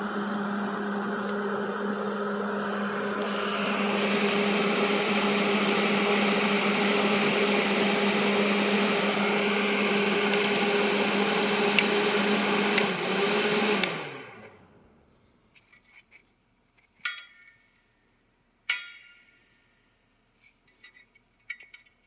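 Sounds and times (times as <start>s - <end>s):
small electric motor whirring: 0.0s - 14.6s.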